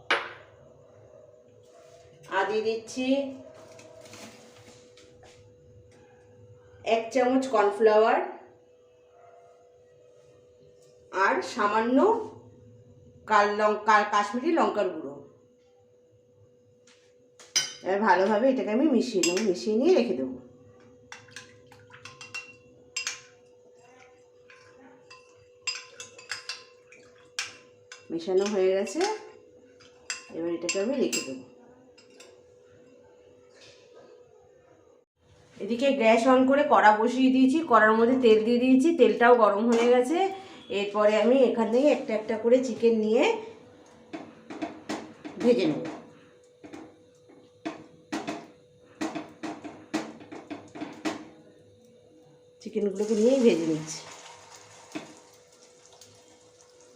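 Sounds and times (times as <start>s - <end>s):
spoon clinking against bowl: 19.2s - 19.6s, 21.1s - 23.5s, 24.5s - 32.4s.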